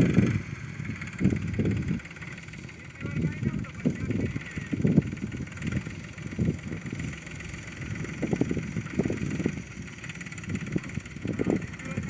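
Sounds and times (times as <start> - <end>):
tractor diesel engine running: 0.0 - 12.0.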